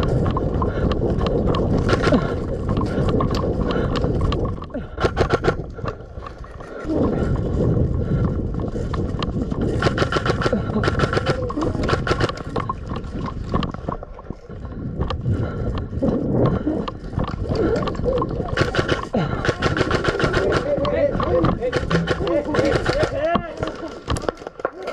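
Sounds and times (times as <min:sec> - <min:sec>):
low microphone rumble: 0:00.0 - 0:23.8
airsoft guns firing: 0:05.0 - 0:05.6, 0:09.8 - 0:12.4, 0:18.6 - 0:20.8, 0:21.7 - 0:23.2.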